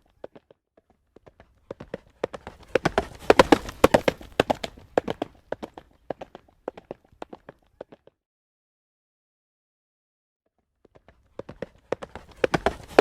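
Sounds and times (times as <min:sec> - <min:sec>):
horse hooves trotting on road: 0:01.1 - 0:08.1, 0:10.9 - 0:13.0.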